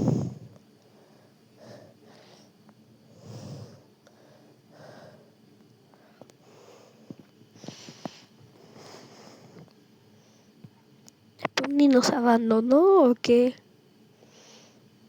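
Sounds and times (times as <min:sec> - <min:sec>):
person breathing heavily: 0:00.0 - 0:10.6.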